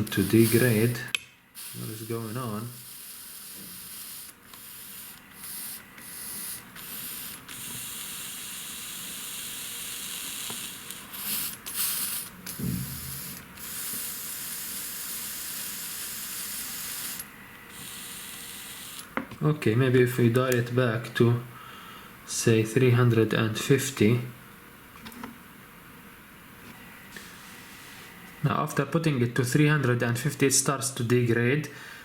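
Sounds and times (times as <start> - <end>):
soldering iron sizzling on wet sponge: 0.0 - 19.2.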